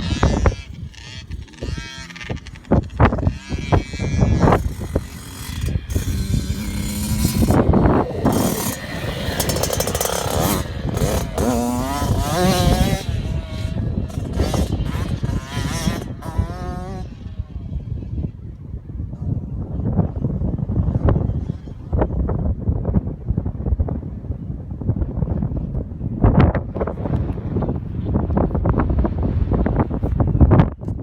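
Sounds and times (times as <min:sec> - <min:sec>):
dirt bike engine revving: 0:00.0 - 0:18.4.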